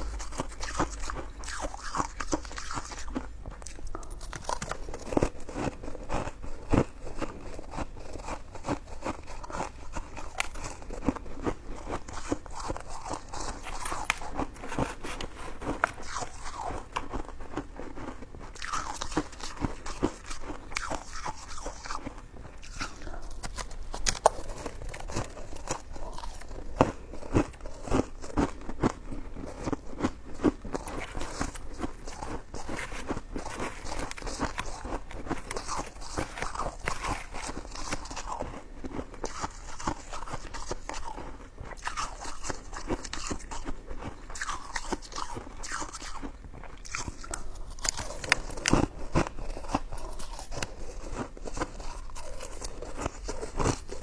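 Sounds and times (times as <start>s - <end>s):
person chewing close up: 0.0s - 54.0s.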